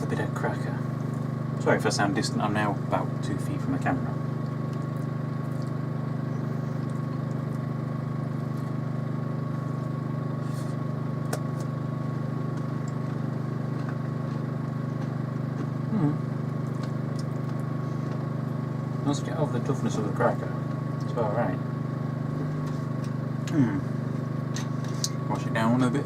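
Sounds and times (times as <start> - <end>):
low hum: 2.3 - 26.0
cracker being chewed: 4.4 - 5.9, 6.7 - 7.8, 16.6 - 18.3
person humming mm: 15.8 - 16.4, 23.4 - 24.0.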